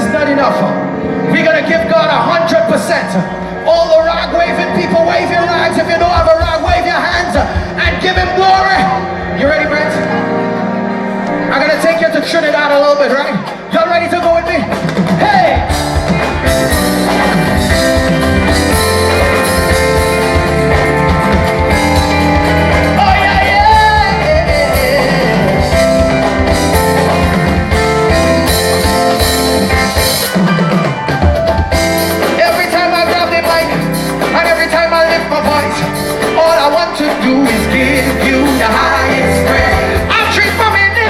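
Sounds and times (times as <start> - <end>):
live band playing gospel groove: 0.0 - 41.0
drum kit: 5.7 - 9.0, 11.7 - 41.0
person singing: 15.2 - 27.7, 32.2 - 41.0.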